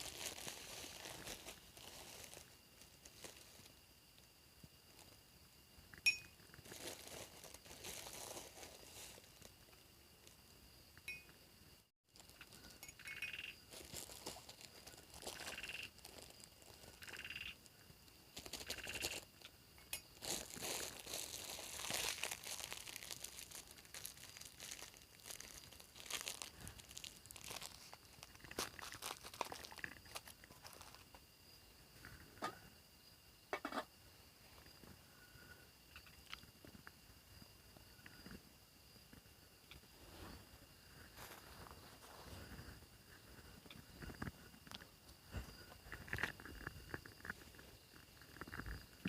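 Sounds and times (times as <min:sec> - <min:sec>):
rustling and crinkling: 0:00.0 - 0:04.3, 0:06.4 - 0:10.4, 0:12.1 - 0:17.6, 0:18.3 - 0:31.2, 0:39.2 - 0:49.0.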